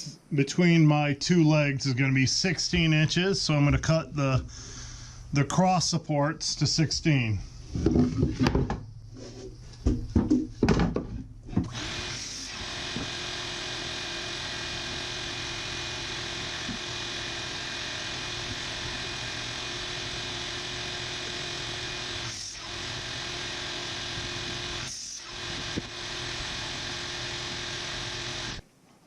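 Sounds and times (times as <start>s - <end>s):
wooden boards knocking: 7.8s - 8.9s, 9.8s - 11.7s
power tool motor whining: 11.6s - 28.6s.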